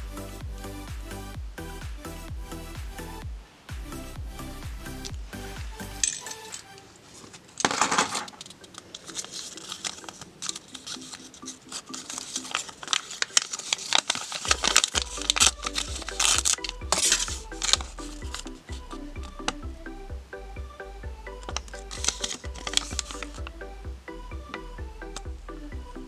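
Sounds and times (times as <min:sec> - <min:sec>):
upbeat electronic music: 0:00.0 - 0:26.0
wrapper crinkling: 0:06.1 - 0:16.4.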